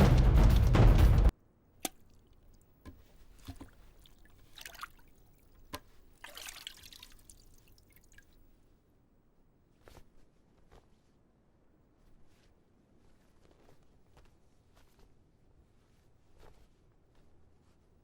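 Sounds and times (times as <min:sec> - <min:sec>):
film soundtrack music: 0:00.0 - 0:01.3
soft rustles: 0:08.5 - 0:18.0.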